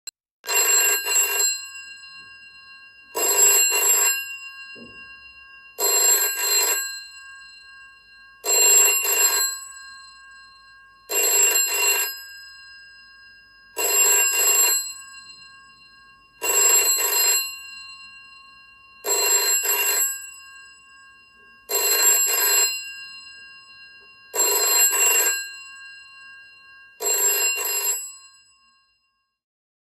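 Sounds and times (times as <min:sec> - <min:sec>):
old telephone bell ringing: 0:00.4 - 0:29.4.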